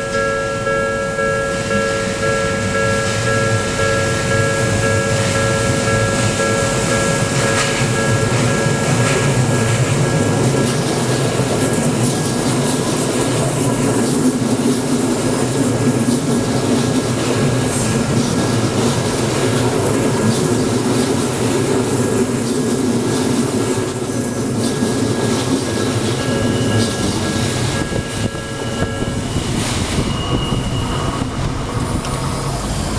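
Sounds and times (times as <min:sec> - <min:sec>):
high steady tones: 0:00.0 - 0:11.6, 0:24.1 - 0:32.9
train rumbling past: 0:00.0 - 0:32.9.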